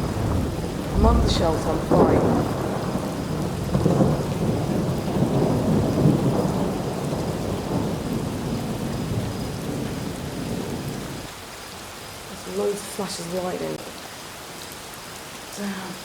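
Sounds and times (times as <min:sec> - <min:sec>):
thunder rumbling: 0:00.0 - 0:11.3
heavy rain: 0:00.0 - 0:16.0.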